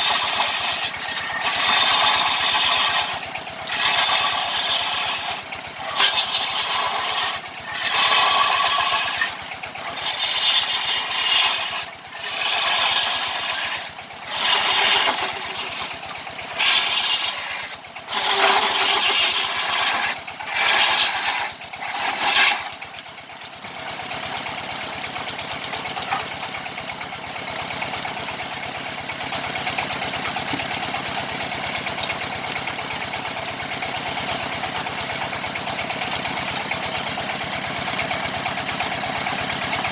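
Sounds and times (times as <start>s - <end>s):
power tool cutting wood: 0.0s - 22.8s, 25.1s - 36.2s.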